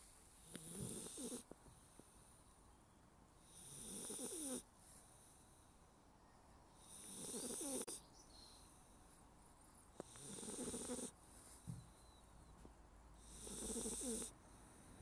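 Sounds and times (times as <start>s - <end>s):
puppy snoring: 0.4s - 1.5s, 3.4s - 4.7s, 6.8s - 8.0s, 10.0s - 11.2s, 13.2s - 15.0s.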